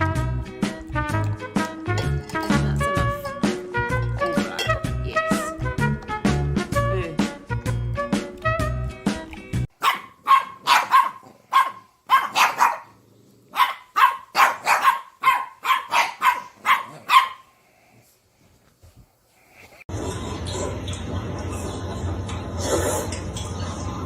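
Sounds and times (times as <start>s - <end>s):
background music: 0.0s - 9.7s
dog barking sharply: 9.8s - 12.9s, 13.5s - 17.4s.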